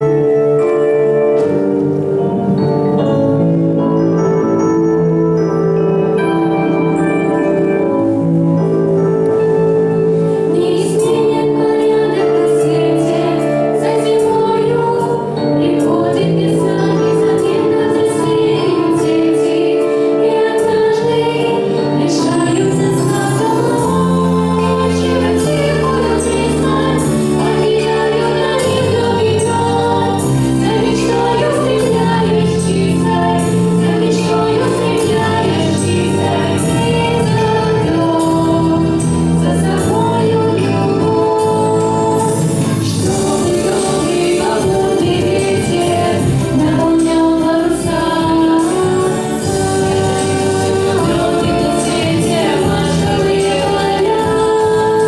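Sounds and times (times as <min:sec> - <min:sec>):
instrumental accompaniment: 0:00.0 - 0:55.0
vocal ensemble singing: 0:05.8 - 0:55.0.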